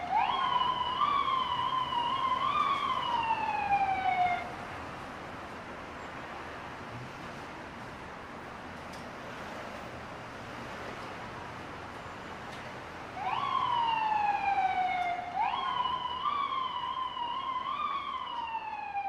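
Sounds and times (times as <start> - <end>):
emergency vehicle siren: 0.0 - 4.7, 13.1 - 19.0
city street traffic: 0.0 - 19.0.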